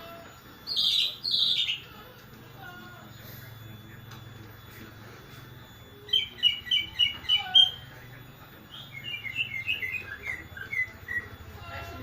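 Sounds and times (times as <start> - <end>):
bird whistling song: 0.7 - 1.8, 6.1 - 7.8, 8.7 - 11.4.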